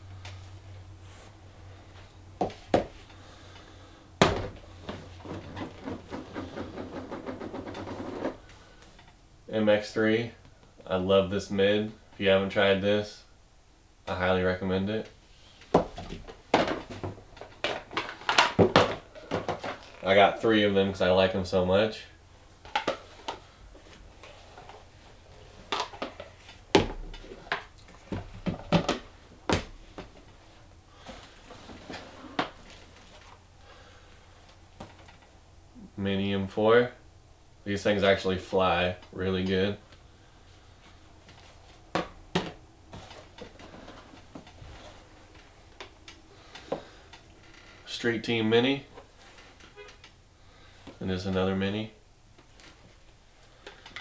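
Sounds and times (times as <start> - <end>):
plastic discs knocking: 2.4 - 8.6, 15.6 - 20.5, 22.6 - 33.2.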